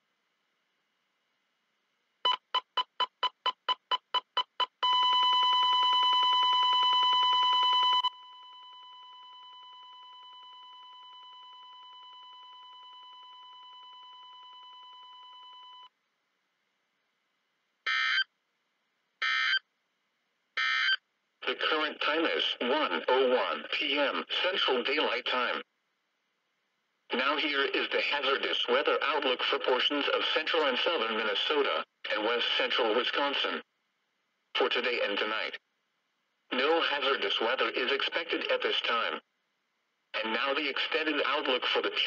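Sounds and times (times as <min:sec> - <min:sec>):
continuous beep tone: 0:02.3 - 0:15.9.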